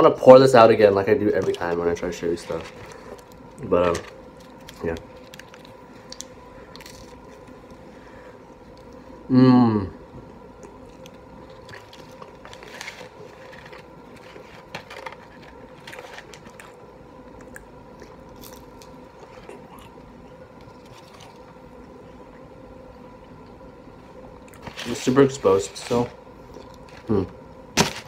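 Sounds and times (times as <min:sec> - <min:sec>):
faint steady hum: 0:00.0 - 0:28.0
chewing and mouth sounds: 0:15.9 - 0:20.0.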